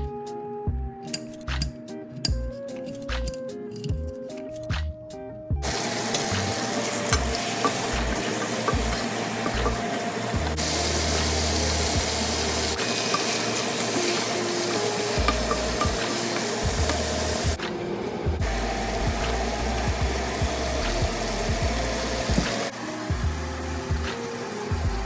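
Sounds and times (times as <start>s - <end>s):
food sizzling in hot oil: 5.6s - 17.6s.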